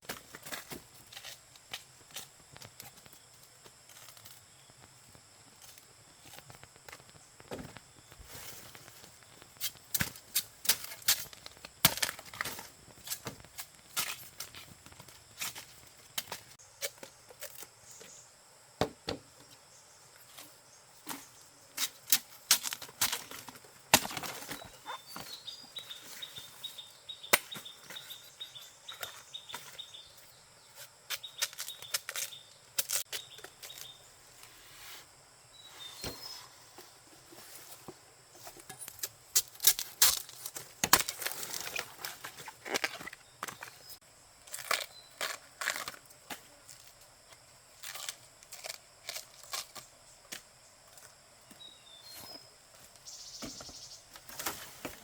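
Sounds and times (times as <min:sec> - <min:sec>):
bird chirping: 0:24.4 - 0:34.2, 0:51.5 - 0:54.2
cracks and rustles in dry litter: 0:37.8 - 0:47.0.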